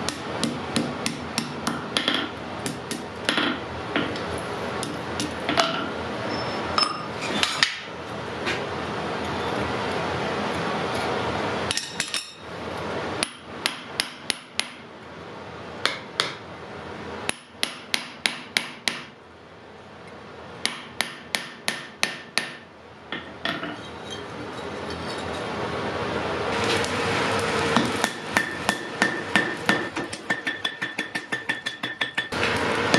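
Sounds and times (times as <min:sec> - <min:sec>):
hammer striking iron on anvil: 0:00.0 - 0:04.2, 0:11.7 - 0:12.4, 0:13.2 - 0:14.8, 0:15.8 - 0:16.4, 0:17.3 - 0:19.2, 0:20.6 - 0:23.8, 0:27.8 - 0:32.4.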